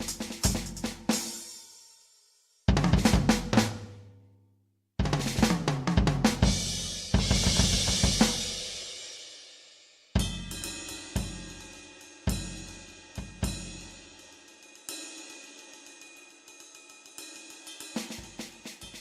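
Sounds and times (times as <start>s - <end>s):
electronic drum kit playing: 0.0s - 1.3s, 5.0s - 8.6s.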